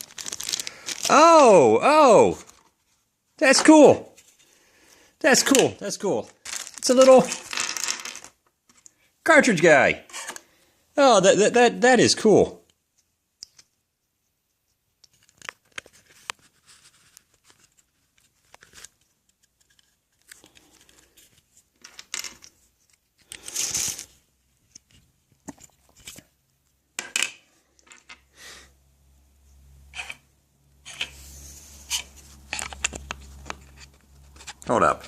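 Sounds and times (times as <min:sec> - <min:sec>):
paper and plastic ripping: 0:00.0 - 0:01.2, 0:06.4 - 0:07.5.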